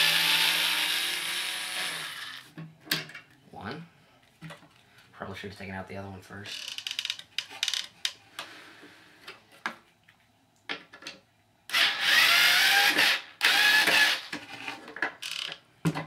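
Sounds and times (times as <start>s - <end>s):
power screwdriver whining: 11.7s - 14.3s.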